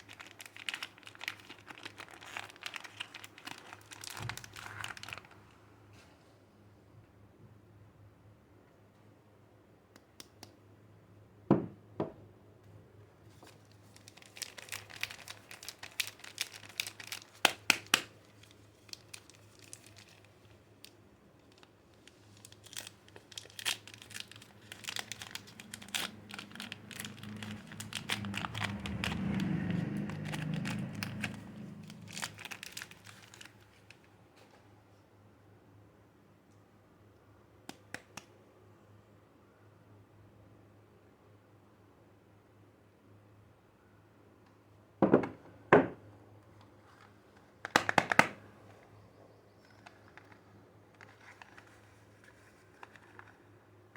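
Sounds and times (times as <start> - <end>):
wrapper crinkling and tearing: 0.0 - 5.5, 13.4 - 34.1, 49.7 - 53.6.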